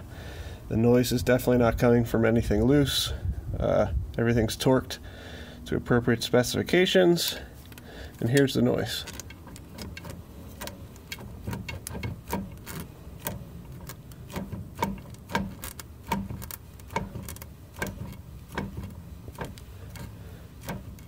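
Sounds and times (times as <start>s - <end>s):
driveshaft clicking: 7.2s - 21.0s.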